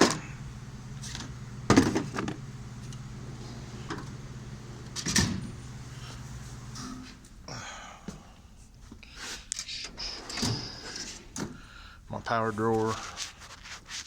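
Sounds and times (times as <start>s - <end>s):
drawer shutting clunk: 0.0s - 0.4s, 1.0s - 4.2s, 4.8s - 5.7s
steady low hum: 0.0s - 12.2s.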